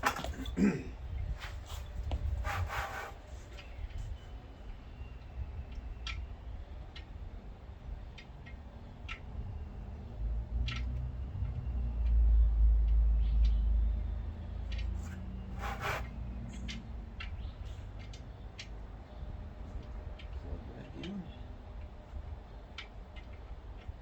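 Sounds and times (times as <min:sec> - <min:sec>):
hand tools clicking and knocking: 0:00.0 - 0:00.7.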